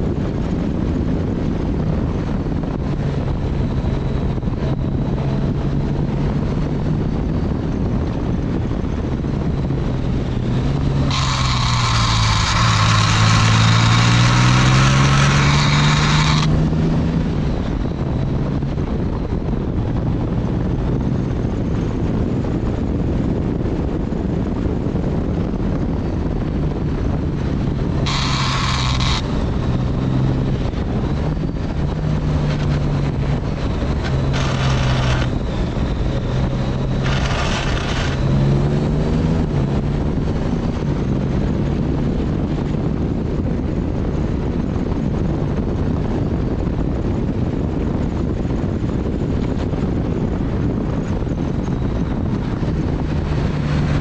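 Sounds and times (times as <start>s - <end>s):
motorcycle engine running: 0.0s - 54.0s
metal scraping asphalt hiss: 11.1s - 16.5s, 28.1s - 29.4s, 37.0s - 38.2s.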